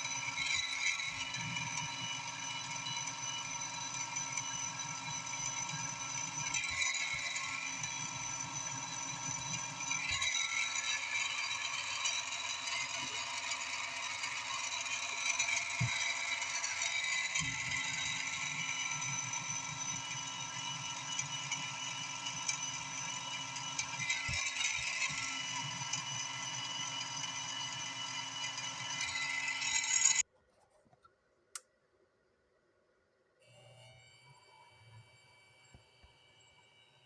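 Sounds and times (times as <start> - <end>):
machine whining: 0.0 - 30.2.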